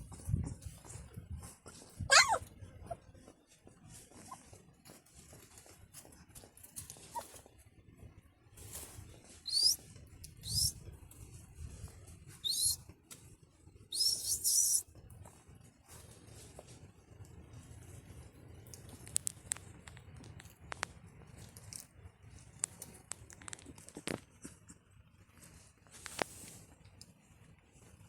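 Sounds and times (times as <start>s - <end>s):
puppies squealing: 2.0s - 3.0s, 9.5s - 9.8s, 10.4s - 10.7s, 12.4s - 12.8s, 13.9s - 14.8s.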